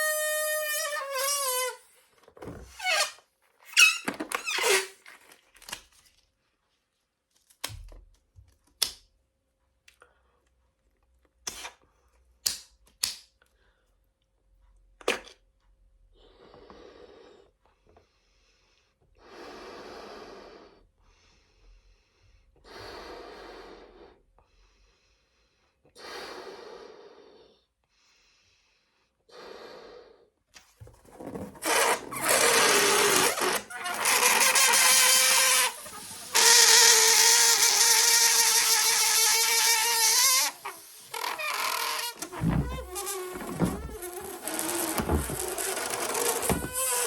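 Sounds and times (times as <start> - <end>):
person blowing into foil balloon: 0.0 - 2.0, 2.7 - 5.0, 31.0 - 47.0.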